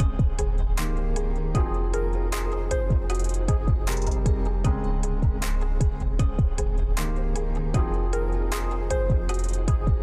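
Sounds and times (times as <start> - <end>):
electronic beat music: 0.0 - 10.0.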